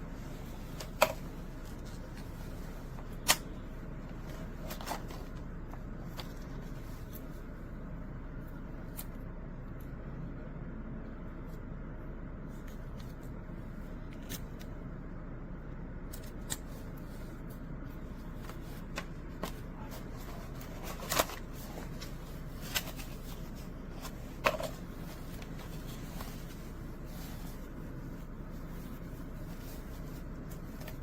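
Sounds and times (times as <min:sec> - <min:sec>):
handling clicks and rustles: 0:00.0 - 0:07.6, 0:16.1 - 0:31.0
low background hum: 0:00.0 - 0:31.0.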